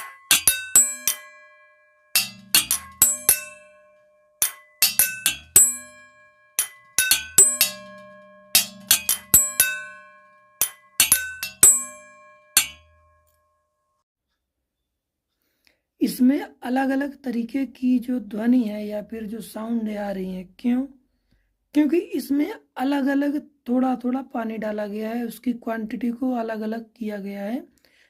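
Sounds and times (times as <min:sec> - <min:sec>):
water-filled utensils struck ringing: 0:00.0 - 0:13.4.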